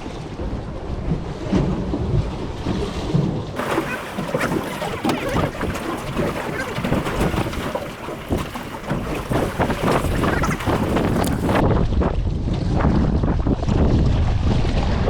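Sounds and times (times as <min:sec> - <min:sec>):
water splashing around boat: 0:00.0 - 0:11.6
wind buffeting microphone: 0:00.3 - 0:15.0.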